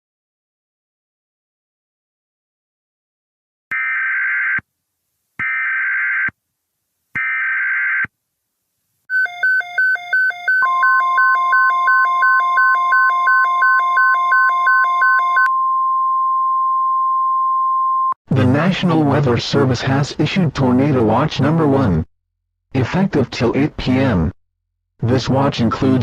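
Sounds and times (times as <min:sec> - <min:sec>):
steady single-pitch alarm tone: 0:09.1 - 0:18.2.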